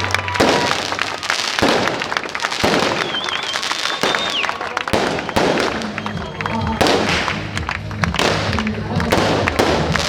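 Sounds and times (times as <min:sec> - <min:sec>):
firework booms: 0:00.0 - 0:06.1, 0:06.7 - 0:07.5, 0:08.1 - 0:10.0
high firework whistle: 0:00.0 - 0:07.2
fireworks crackling: 0:00.0 - 0:10.0.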